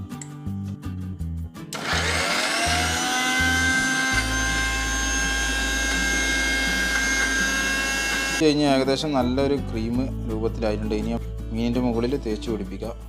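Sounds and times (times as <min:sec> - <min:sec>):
mixer grinder motor whining: 0:01.8 - 0:08.4.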